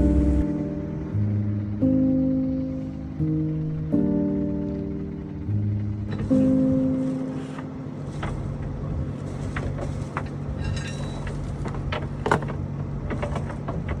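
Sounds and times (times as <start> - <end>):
engine humming: 0.0 - 14.0
sharp clicks and knocks: 9.5 - 14.0.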